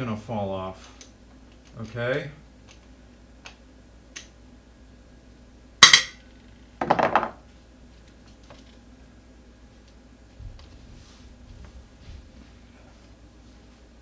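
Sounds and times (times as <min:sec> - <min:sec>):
metal hardware rattling: 0:05.8 - 0:06.2
sharp metallic clanks: 0:05.8 - 0:06.2.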